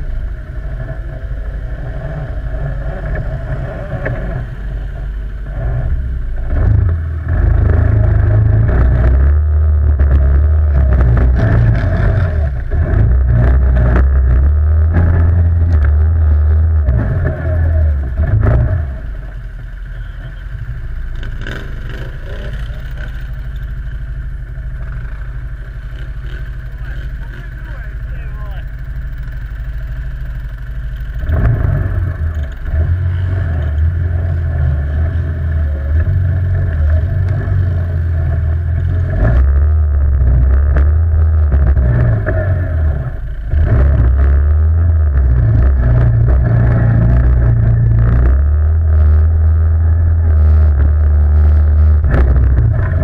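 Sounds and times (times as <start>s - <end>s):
quad bike engine running: 0.0s - 53.0s
knocks and clatter: 6.5s - 17.4s.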